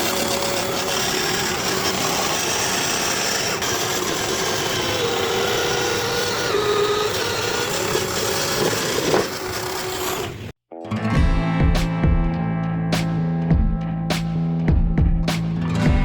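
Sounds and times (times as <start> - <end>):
power tool grinding: 0.0 - 10.6.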